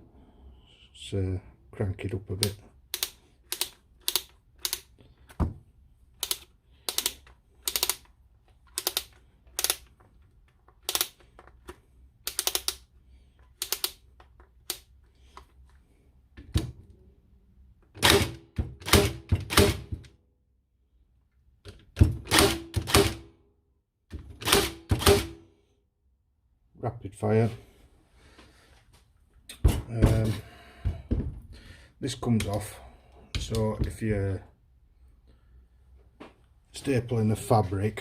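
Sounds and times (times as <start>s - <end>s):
stapler firing staples into wood: 18.0s - 20.1s, 22.0s - 23.3s, 24.1s - 25.4s.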